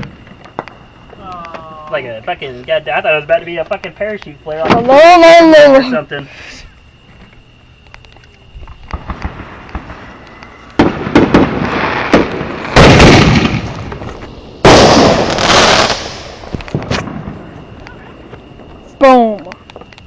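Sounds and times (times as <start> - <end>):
firework booms: 0.0 - 3.9, 4.5 - 5.6, 8.6 - 19.4
firework cracks: 0.0 - 5.7, 7.8 - 20.0
firework crackling: 0.0 - 6.6, 7.8 - 20.0.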